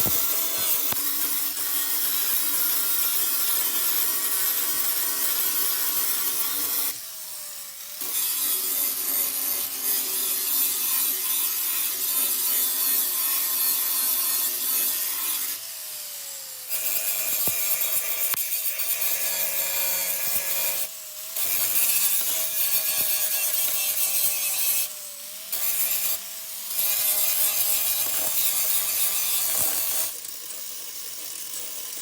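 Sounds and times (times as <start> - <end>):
power tool motor hum: 0.0 - 10.4, 11.0 - 32.0.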